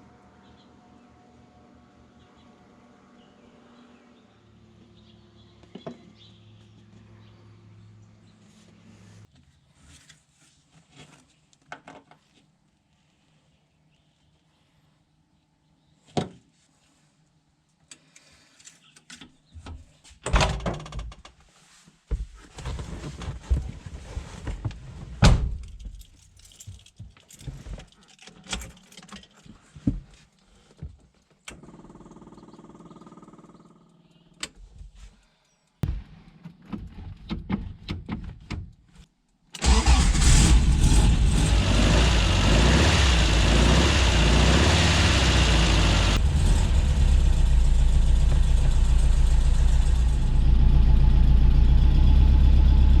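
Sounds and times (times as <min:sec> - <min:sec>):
car engine starting and running: 0:39.6 - 0:53.0.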